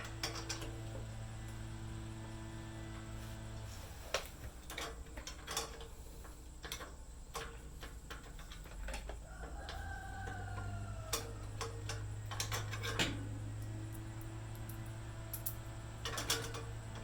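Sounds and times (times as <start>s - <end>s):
metal clicks of hand tools: 4.1s - 6.0s, 6.6s - 14.0s
rooster crowing: 9.2s - 11.9s.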